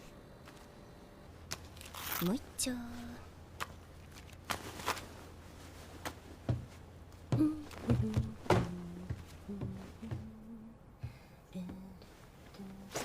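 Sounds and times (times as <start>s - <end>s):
steady low hum: 0.0s - 13.0s
soft thuds and knocks: 6.0s - 10.4s.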